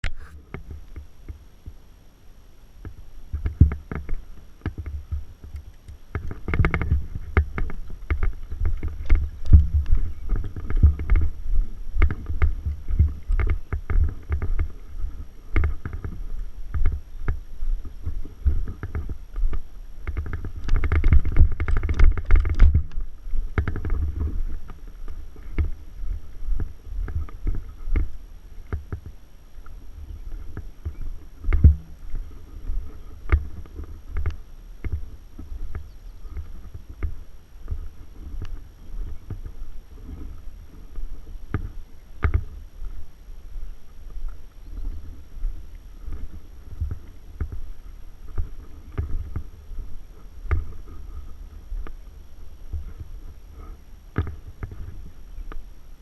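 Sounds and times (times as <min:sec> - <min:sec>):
handling thumps and knocks: 0:02.8 - 0:43.0.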